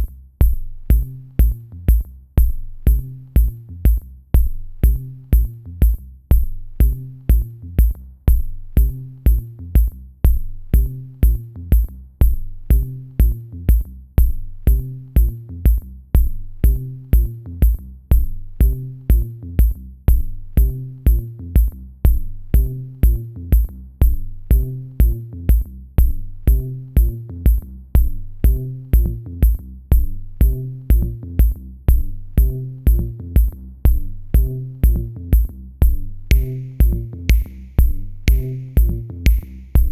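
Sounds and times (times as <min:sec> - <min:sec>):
drum machine kick beat: 0:00.0 - 0:39.9
electronic music: 0:36.3 - 0:39.9.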